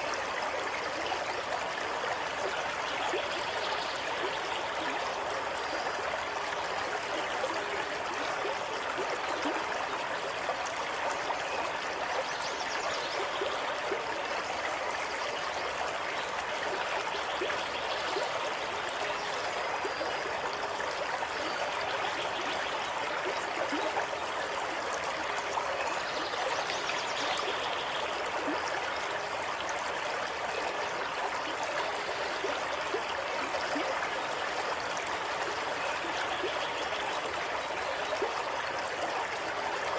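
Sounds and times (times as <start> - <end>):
stream babbling: 0.0 - 39.9.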